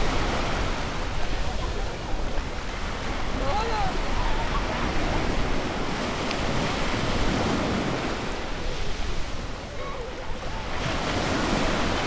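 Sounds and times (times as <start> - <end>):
ocean surf on beach: 0.0 - 12.0
faint children's voices: 1.1 - 5.6, 8.5 - 12.0.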